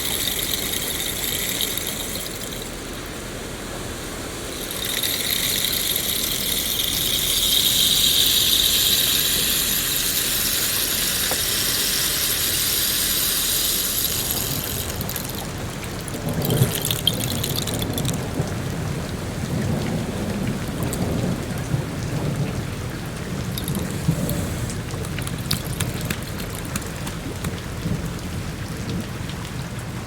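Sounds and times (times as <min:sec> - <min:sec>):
high even hiss: 0:00.0 - 0:15.6
steady rain: 0:00.0 - 0:30.0.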